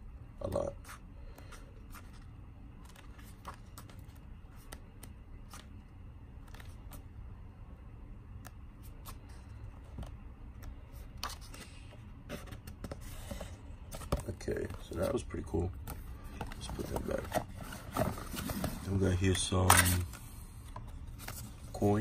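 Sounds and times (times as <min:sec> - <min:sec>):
low steady hum: 0:00.0 - 0:22.0
paper pages rustling: 0:00.9 - 0:05.8, 0:06.4 - 0:07.0, 0:08.8 - 0:20.1.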